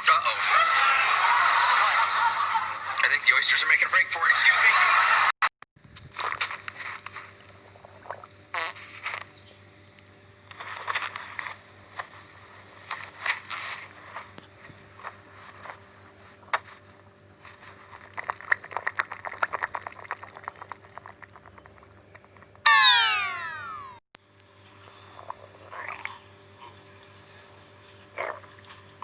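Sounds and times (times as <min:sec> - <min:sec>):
stomach growling and gurgling: 0:05.8 - 0:09.4, 0:10.5 - 0:22.6, 0:24.8 - 0:29.0.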